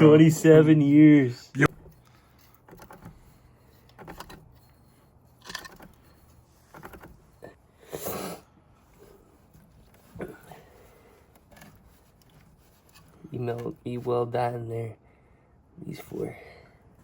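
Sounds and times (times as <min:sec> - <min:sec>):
tools and metal parts clinking: 0:01.8 - 0:07.0.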